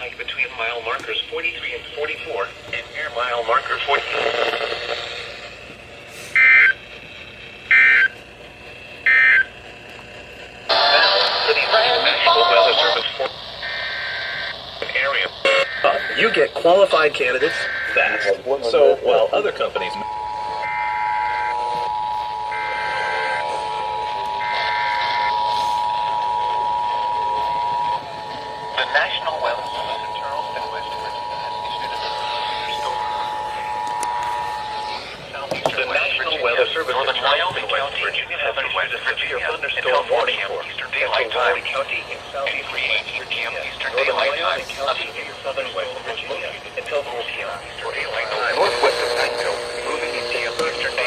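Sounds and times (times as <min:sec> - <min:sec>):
buzzy two-tone data warble: 0:10.7 - 0:38.2, 0:41.1 - 0:51.0.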